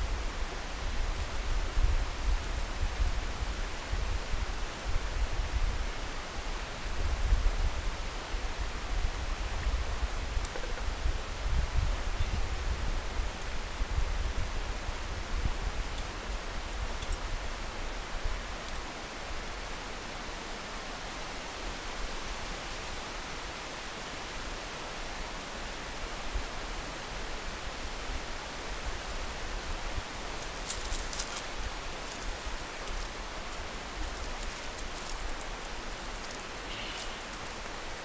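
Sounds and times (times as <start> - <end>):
wind noise on microphone: 0.0 - 38.0
wood fire crackling: 28.9 - 38.0.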